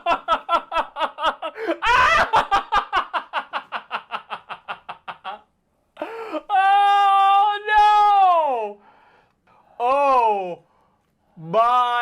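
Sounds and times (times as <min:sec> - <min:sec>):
person laughing hard: 0:00.0 - 0:06.4.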